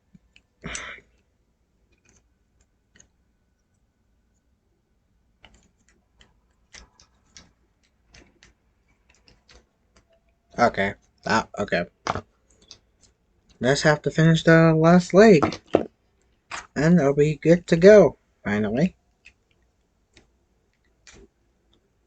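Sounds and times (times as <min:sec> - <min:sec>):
plastic parts clicking: 0:05.4 - 0:10.4.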